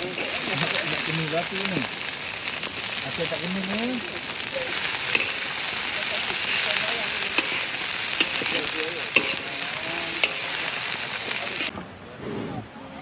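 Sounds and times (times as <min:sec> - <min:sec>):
food sizzling in hot oil: 0:00.0 - 0:11.7
oil popping: 0:00.0 - 0:11.7.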